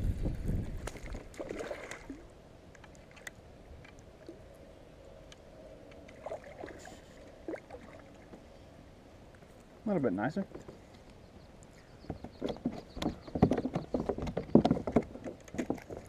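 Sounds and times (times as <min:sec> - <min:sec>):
wind: 0:00.0 - 0:16.0
brief splash: 0:00.8 - 0:02.2
gear clicking in plastic kayak: 0:12.0 - 0:16.0.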